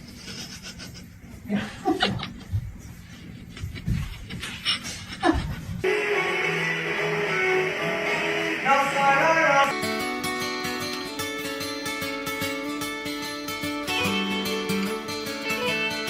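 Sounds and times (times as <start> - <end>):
instrumental music with plucked guitar: 9.7 - 16.0.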